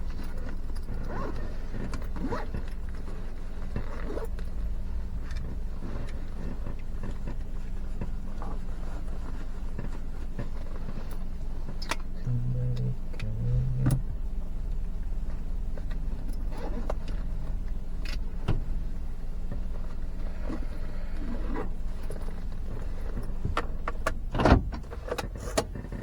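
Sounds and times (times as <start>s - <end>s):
vehicle engine and road noise: 0.0s - 26.0s
low-pitched horn honk: 12.2s - 18.5s.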